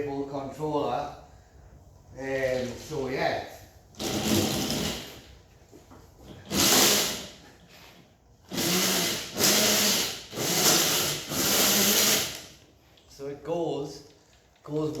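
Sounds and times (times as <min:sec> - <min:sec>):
electric motor and chain whirring: 0:08.5 - 0:12.6.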